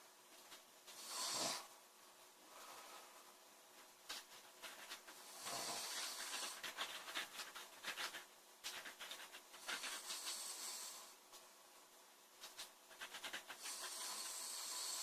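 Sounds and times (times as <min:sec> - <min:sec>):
girl snoring: 0:01.0 - 0:01.7, 0:13.7 - 0:15.0.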